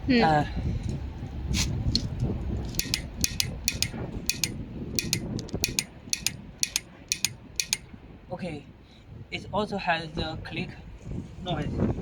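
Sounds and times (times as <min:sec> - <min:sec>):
torque wrench clicking: 0:02.7 - 0:07.8.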